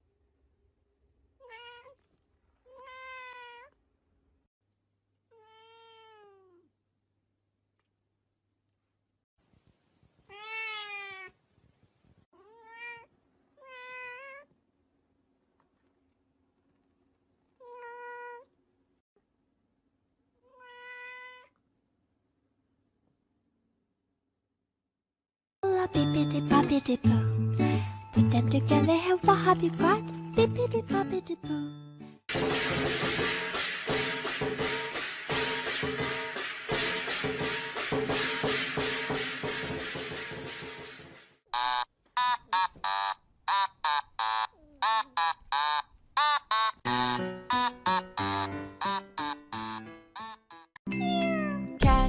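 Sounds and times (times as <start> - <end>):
cat meowing: 1.4 - 3.8, 5.3 - 6.7, 10.3 - 11.4, 12.4 - 14.5, 17.6 - 18.5, 20.4 - 21.6.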